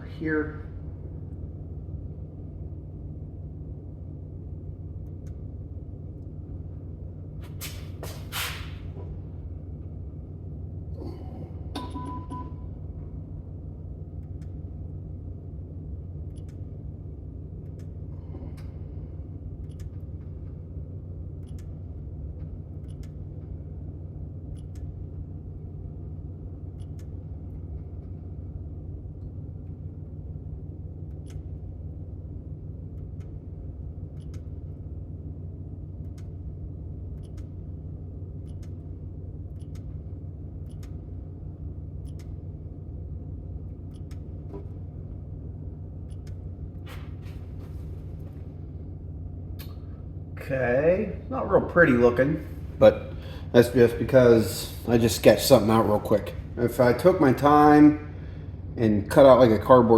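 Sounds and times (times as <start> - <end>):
low electrical hum: 0.0 - 59.9
faint clicks: 22.8 - 23.5, 34.1 - 34.6, 39.5 - 40.0, 40.6 - 41.0, 42.0 - 42.4, 46.0 - 46.4.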